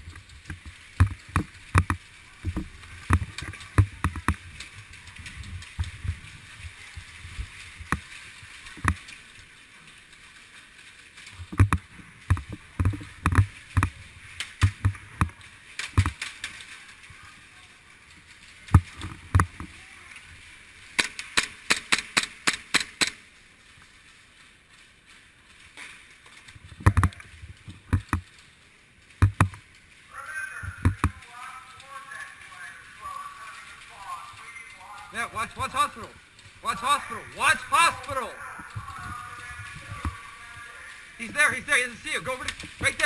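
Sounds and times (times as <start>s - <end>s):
faint steady hiss: 0.0s - 43.0s
sharp knocks and clicks: 0.4s - 4.4s, 27.8s - 28.4s, 29.1s - 29.6s.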